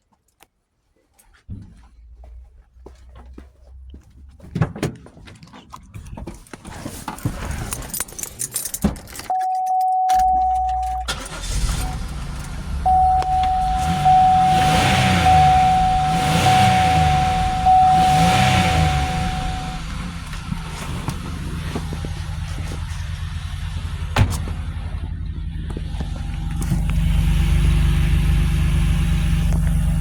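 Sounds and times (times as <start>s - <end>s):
keys jingling: 7.0s - 11.5s
electronic warning chime: 9.3s - 11.3s, 12.9s - 20.0s
car engine running: 10.4s - 30.0s
clicks: 12.4s - 14.5s.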